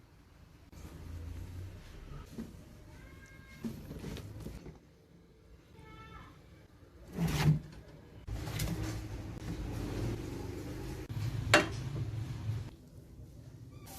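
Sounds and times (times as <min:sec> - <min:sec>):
cookware clunk: 0:11.5 - 0:11.9.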